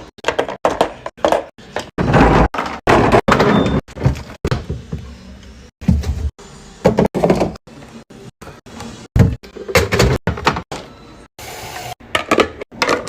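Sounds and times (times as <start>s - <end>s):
containers knocking and clunking: 0.2s - 5.0s, 12.1s - 13.0s.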